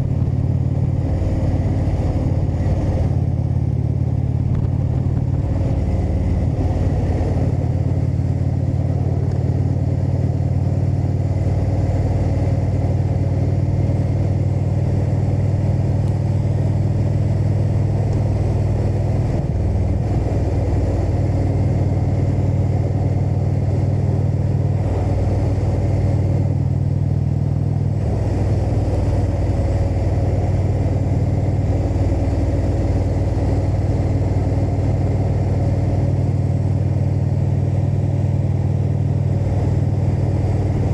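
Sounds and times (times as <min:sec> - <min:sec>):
motorcycle engine running: 0:00.0 - 0:40.9
wind and road noise: 0:00.0 - 0:40.9.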